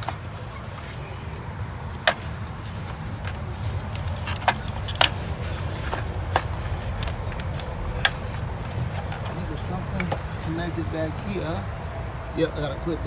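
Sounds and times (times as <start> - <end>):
plastic clips clicking: 2.0 - 10.4.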